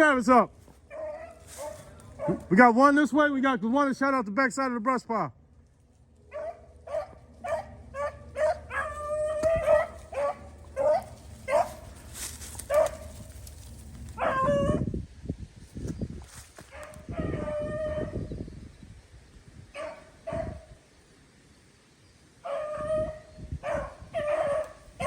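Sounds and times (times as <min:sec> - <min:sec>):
hounds baying and yelping: 0:00.7 - 0:02.5, 0:06.2 - 0:14.9, 0:16.7 - 0:18.3, 0:19.7 - 0:20.8, 0:22.4 - 0:25.0.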